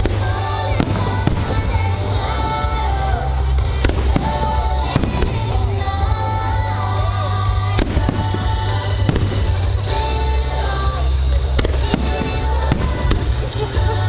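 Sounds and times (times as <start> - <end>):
fireworks bangs: 0.0 - 6.4, 7.6 - 14.0
music with heavy bass: 0.0 - 14.0.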